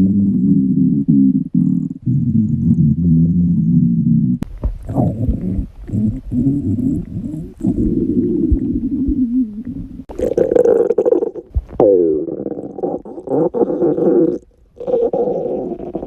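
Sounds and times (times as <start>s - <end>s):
stomach growling: 0.0s - 16.0s.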